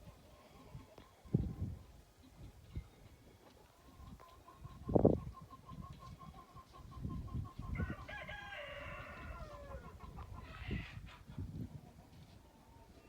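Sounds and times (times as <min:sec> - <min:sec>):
rooster crowing: 0:07.8 - 0:09.9.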